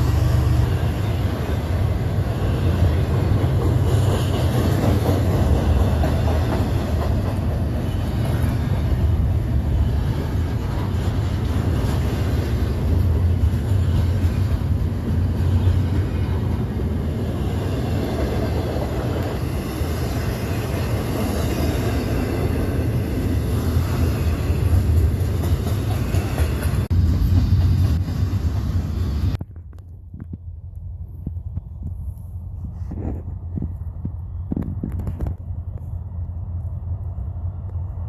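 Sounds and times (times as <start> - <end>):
train rolling past: 0.0 - 29.4.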